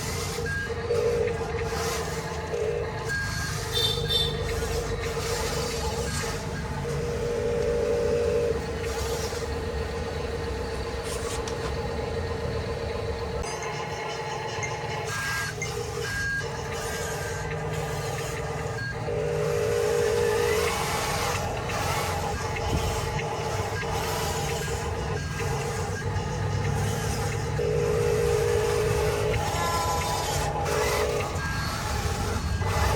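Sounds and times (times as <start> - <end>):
electronic engine and warning sound: 0.0 - 32.9
toy trucks running: 0.0 - 32.9.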